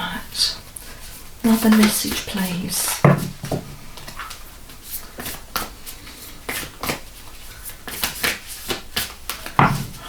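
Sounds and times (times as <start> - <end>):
cards snapping and clicking: 7.8 - 9.9.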